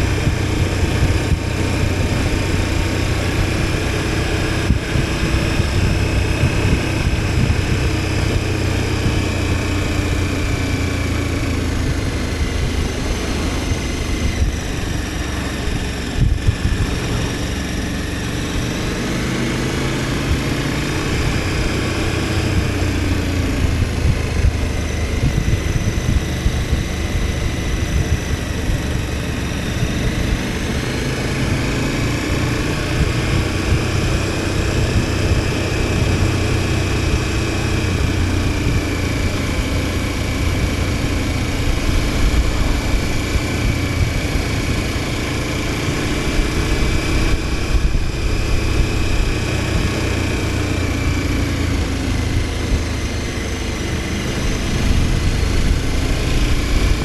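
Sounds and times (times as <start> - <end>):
motorcycle engine running: 0.0 - 57.0
wind and road noise: 0.0 - 57.0.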